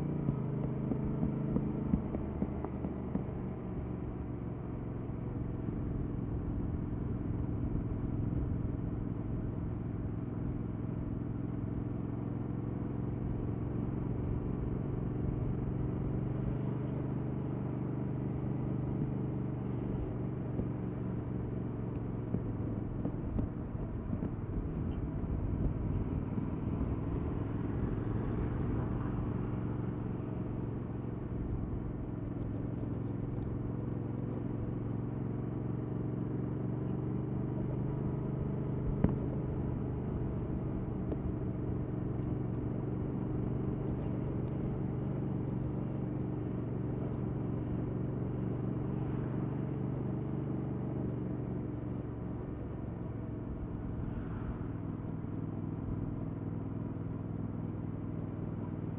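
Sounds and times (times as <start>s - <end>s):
motorcycle engine running: 0.0s - 4.0s.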